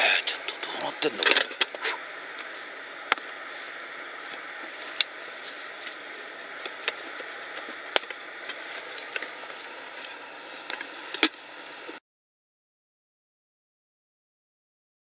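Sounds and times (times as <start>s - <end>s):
wood fire hissing: 0.0s - 12.0s
fire popping and crackling: 0.4s - 12.0s.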